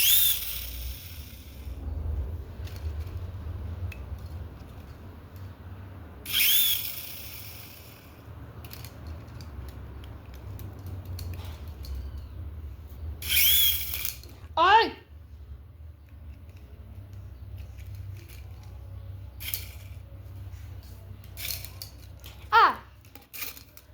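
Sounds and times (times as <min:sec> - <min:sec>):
toy helicopter motor whirring: 0:00.0 - 0:01.8, 0:02.5 - 0:04.8, 0:06.2 - 0:12.3, 0:13.2 - 0:14.4, 0:16.3 - 0:23.9
steady low rumble: 0:00.6 - 0:06.3.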